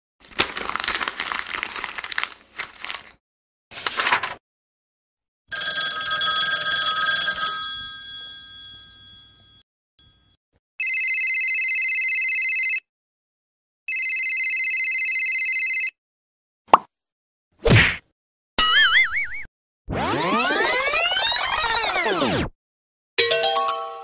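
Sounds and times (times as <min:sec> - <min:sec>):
telephone bell ringing: 0:05.5 - 0:12.9, 0:13.9 - 0:16.0.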